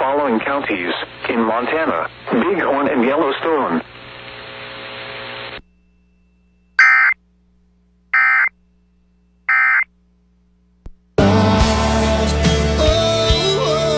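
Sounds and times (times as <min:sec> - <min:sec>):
buzzing digital data tones: 0:06.8 - 0:07.2, 0:08.1 - 0:08.6, 0:09.4 - 0:09.9.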